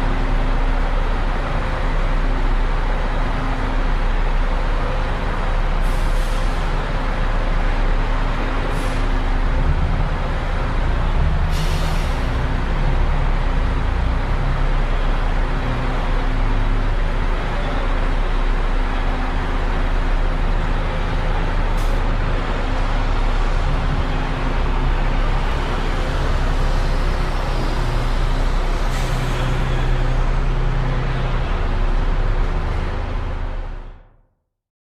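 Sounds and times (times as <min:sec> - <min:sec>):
traffic noise: 0:00.0 - 0:34.1
bus diesel engines idling: 0:00.0 - 0:34.2
air brake hisses: 0:05.8 - 0:06.7, 0:08.7 - 0:09.1, 0:11.5 - 0:12.4, 0:28.8 - 0:30.0.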